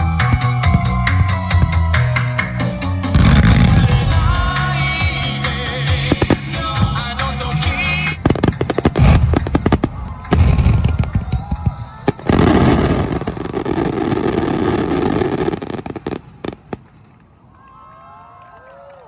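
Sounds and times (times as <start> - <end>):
fireworks exploding: 3.0 - 17.5.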